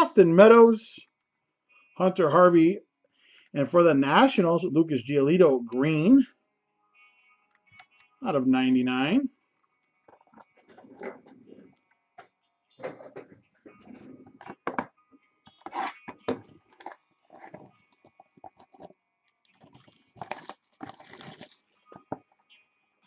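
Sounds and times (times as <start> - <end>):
card packaging clicking: 15.6 - 21.7
packaging crinkling and tearing: 18.5 - 21.7.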